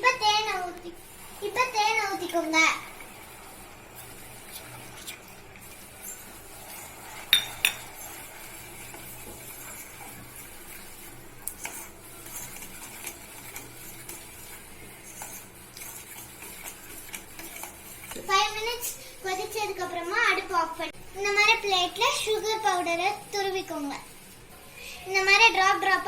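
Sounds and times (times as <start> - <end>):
spoon knocking on pan: 7.3 - 7.9
spoon scraping and clinking in pan: 7.3 - 8.0.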